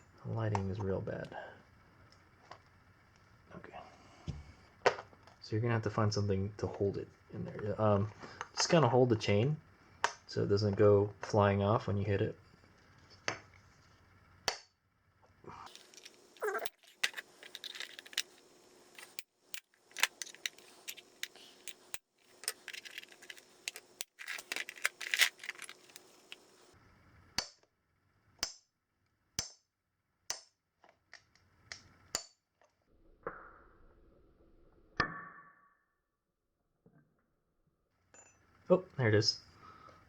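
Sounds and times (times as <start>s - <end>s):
metal clicks and rattles: 15.7s - 26.7s.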